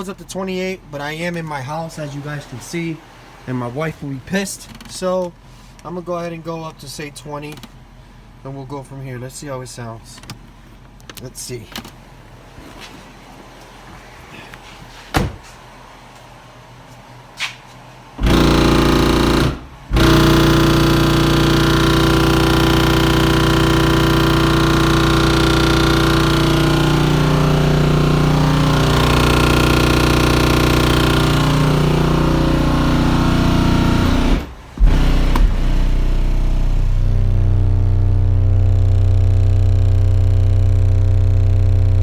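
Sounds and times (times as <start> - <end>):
heavy buzzing rattle: 18.2 - 42.0
subwoofers playing low bass tone: 18.2 - 42.0.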